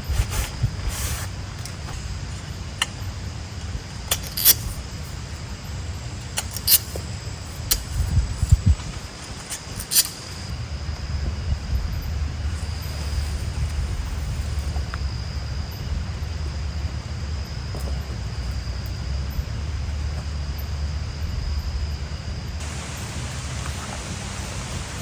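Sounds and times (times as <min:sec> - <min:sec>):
heavy rain in forest: 0:22.6 - 0:25.0.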